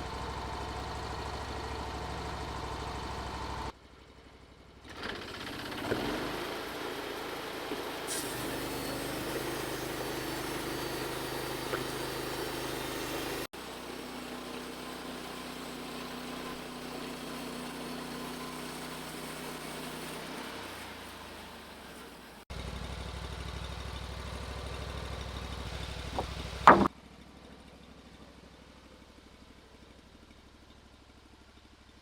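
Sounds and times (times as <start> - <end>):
sawmill engine running: 5.2 - 26.9.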